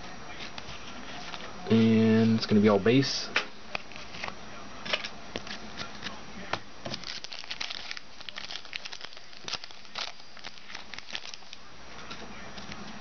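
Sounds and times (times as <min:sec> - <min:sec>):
pack wrapper crinkling: 0:06.9 - 0:11.6.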